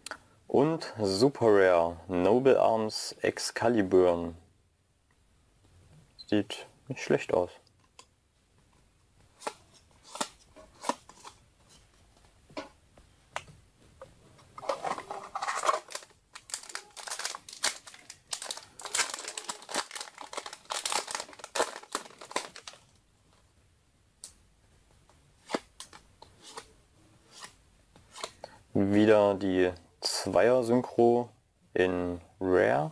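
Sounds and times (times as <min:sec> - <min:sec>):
foil wrapper crinkling and tearing: 0:14.8 - 0:22.9.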